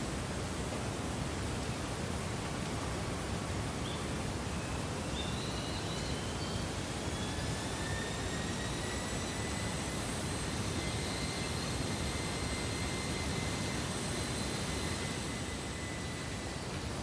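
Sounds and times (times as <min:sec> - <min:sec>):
distant jet airplane whine: 0:00.0 - 0:17.0
rural ambience hiss: 0:00.0 - 0:17.0.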